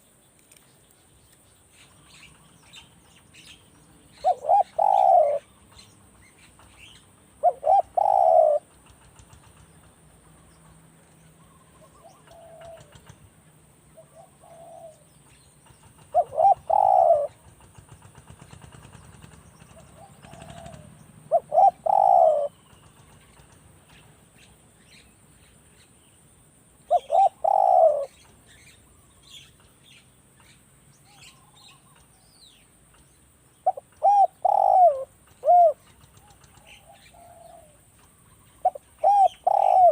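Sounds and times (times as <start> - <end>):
dove cooing: 4.1 - 5.5, 6.6 - 8.8, 11.7 - 13.2, 14.0 - 15.1, 15.9 - 18.0, 19.6 - 22.8, 26.9 - 29.4, 33.6 - 37.9, 38.6 - 39.9.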